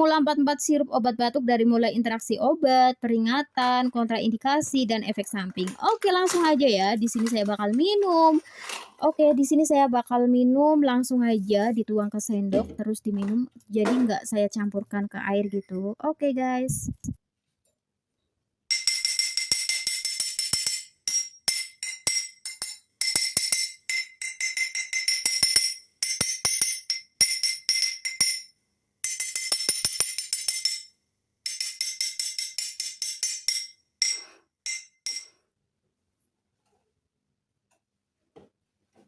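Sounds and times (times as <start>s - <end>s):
rapid jingling percussion: 5.6s - 8.8s, 18.7s - 30.9s, 31.5s - 35.3s.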